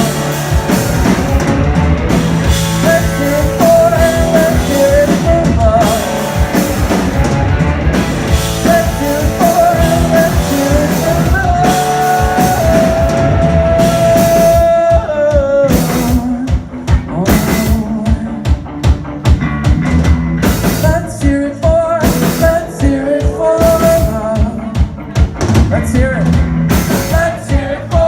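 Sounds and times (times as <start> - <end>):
person singing: 0.0 - 18.7, 20.6 - 28.0
drum kit: 0.0 - 28.0
electric guitars: 0.0 - 28.0.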